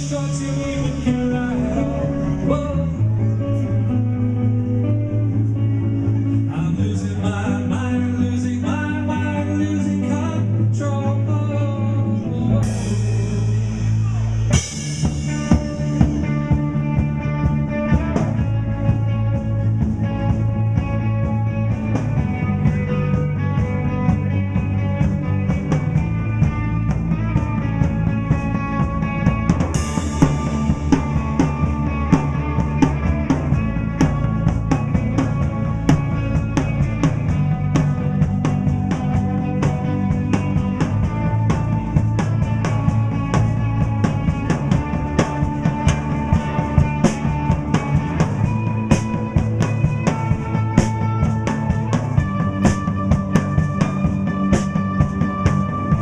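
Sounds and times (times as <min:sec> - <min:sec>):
live rock band playing: 0:00.0 - 0:56.0.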